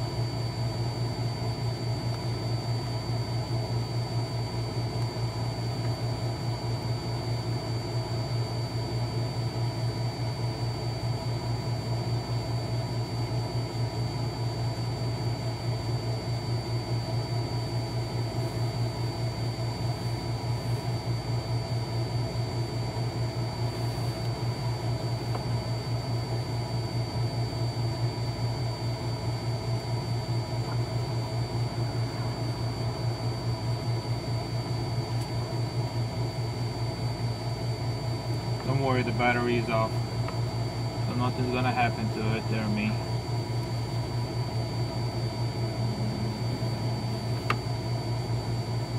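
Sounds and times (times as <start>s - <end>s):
low machine hum with flutter: 0.0s - 48.9s
thin high-pitched whine: 44.6s - 48.7s.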